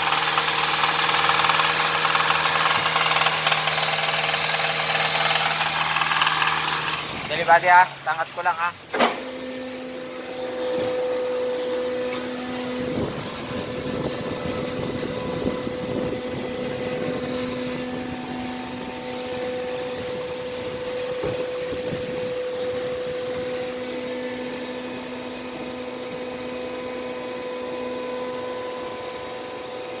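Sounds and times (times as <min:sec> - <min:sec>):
car engine running: 0:00.0 - 0:10.8
steady whine: 0:00.0 - 0:30.0.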